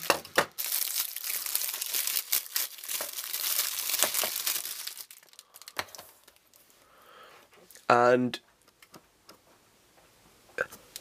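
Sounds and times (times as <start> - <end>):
packing material crinkling: 0.0 - 6.7.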